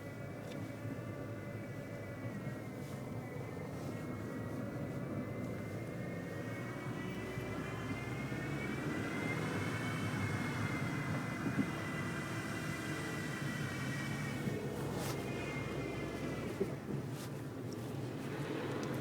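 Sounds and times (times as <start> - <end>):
high dynamo-like whine: 0.0 - 16.9
road and engine noise: 0.0 - 19.0.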